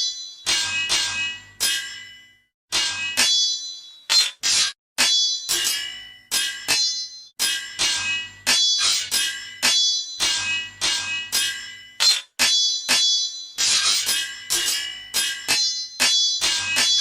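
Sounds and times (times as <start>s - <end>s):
metal swords clashing: 0.0s - 2.1s, 2.7s - 17.0s.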